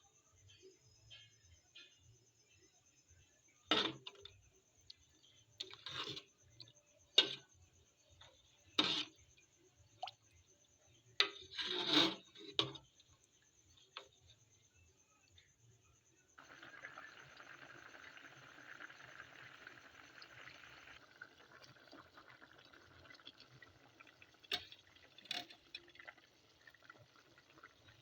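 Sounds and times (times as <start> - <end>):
utensils knocking and scraping a pot: 3.7 - 4.4, 5.6 - 7.6, 8.2 - 9.4, 11.2 - 14.2, 24.5 - 25.9.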